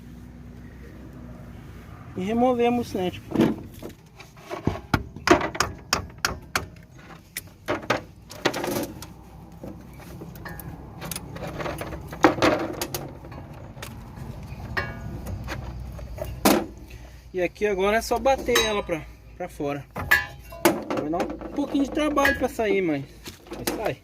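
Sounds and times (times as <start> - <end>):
parts rattling: 2.9 - 17.2, 17.9 - 19.2, 19.8 - 24.0
metal tools clicking and clanking: 9.8 - 16.8, 18.0 - 19.1, 19.9 - 24.0.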